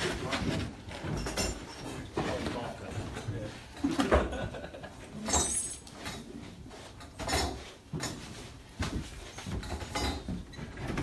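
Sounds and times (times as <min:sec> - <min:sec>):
tools knocking and clinking: 0:00.4 - 0:02.3, 0:07.0 - 0:11.0.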